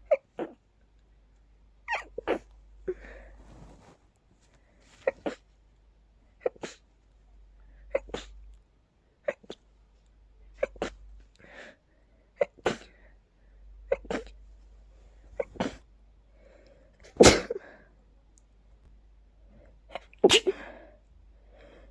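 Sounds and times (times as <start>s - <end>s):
person sneezing: 15.4s - 15.8s, 17.1s - 17.7s, 20.0s - 20.7s.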